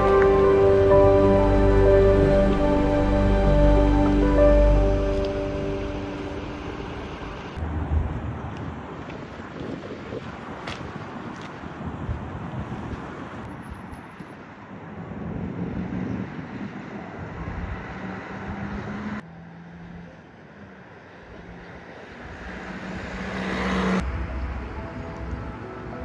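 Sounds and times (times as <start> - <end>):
vehicle passing: 22.2 - 26.0.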